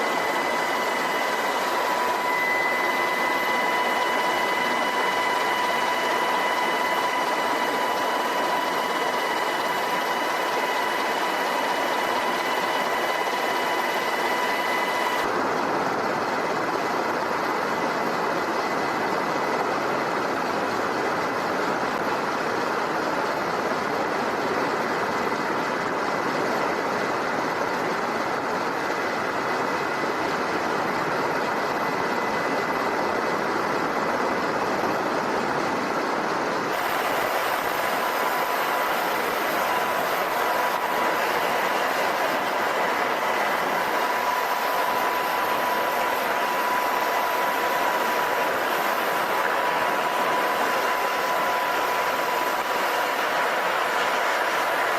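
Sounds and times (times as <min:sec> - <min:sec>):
helicopter turbine and rotor noise: 0:00.0 - 0:54.9.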